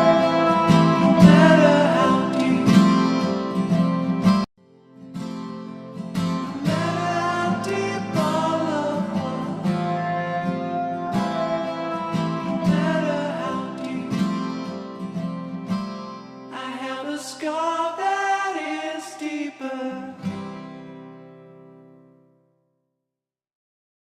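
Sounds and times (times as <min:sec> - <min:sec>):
person singing: 0:00.0 - 0:04.0, 0:06.5 - 0:14.9, 0:16.5 - 0:20.3
strummed acoustic guitar: 0:00.0 - 0:22.5.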